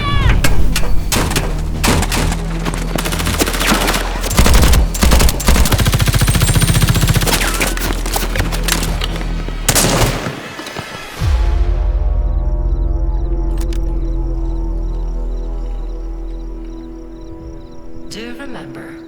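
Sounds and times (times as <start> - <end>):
automatic gunfire: 1.9 - 8.5
low music bed: 11.2 - 19.0.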